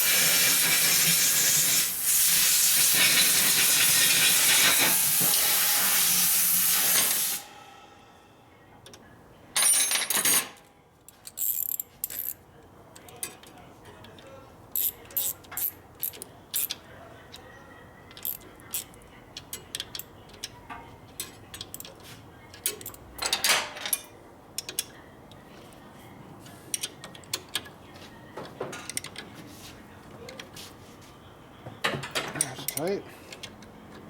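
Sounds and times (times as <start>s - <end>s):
hand tools clinking on metal: 9.6s - 12.4s, 13.0s - 17.5s, 18.1s - 24.9s, 31.9s - 34.0s
sharp fastener clicks: 14.8s - 16.8s.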